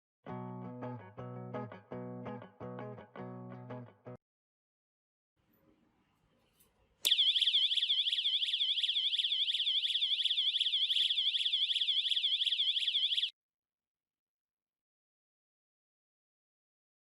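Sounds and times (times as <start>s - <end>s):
electronic siren warbling: 7.1s - 13.3s.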